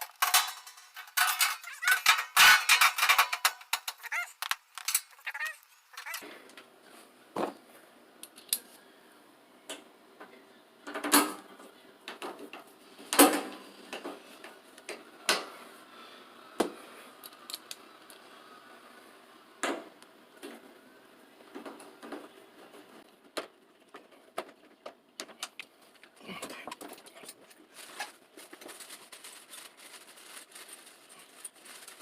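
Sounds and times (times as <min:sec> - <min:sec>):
hard objects clicking and knocking: 0:00.0 - 0:06.2.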